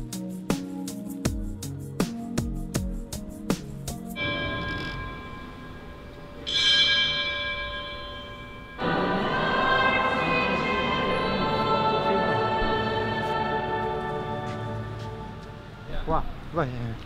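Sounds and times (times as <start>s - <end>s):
sustained music tones: 0.0s - 16.4s
bell-like chime: 4.2s - 9.1s
choir-like voices: 8.8s - 15.9s.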